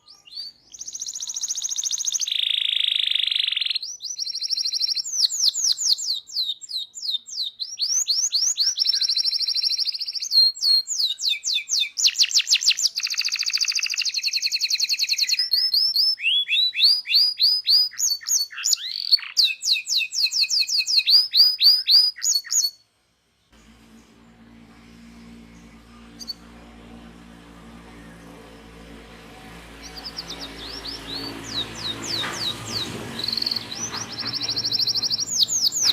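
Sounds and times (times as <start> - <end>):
canary singing trills: 0.0 - 22.8, 25.2 - 35.9
faint low hum: 23.0 - 35.9.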